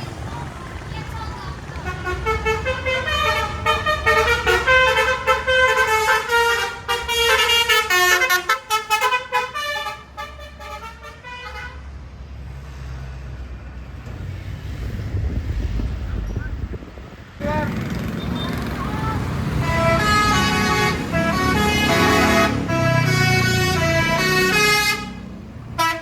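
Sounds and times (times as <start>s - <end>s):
bus engine rumble: 0.0s - 26.0s
multi-tone air horn tune: 1.8s - 11.8s, 17.4s - 25.2s, 25.8s - 26.0s.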